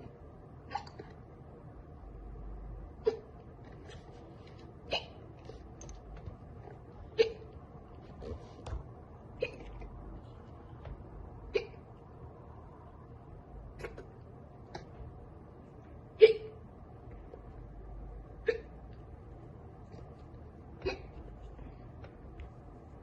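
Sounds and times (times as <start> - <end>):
girl hiccupping: 0.6 - 1.2, 3.0 - 3.4, 4.8 - 5.6, 7.0 - 7.6, 9.4 - 9.9, 11.4 - 12.0, 16.2 - 16.6, 18.4 - 18.9, 20.8 - 21.4.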